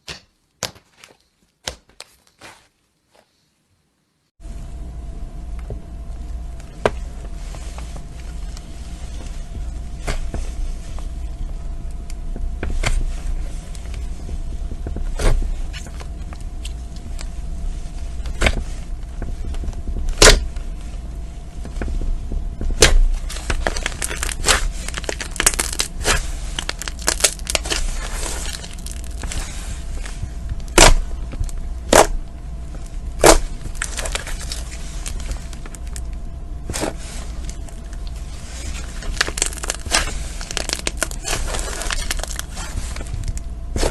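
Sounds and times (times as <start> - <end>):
faint steady hum: 0.0 - 43.9
slime squeezed with sticky pops: 22.8 - 29.3, 38.7 - 43.9.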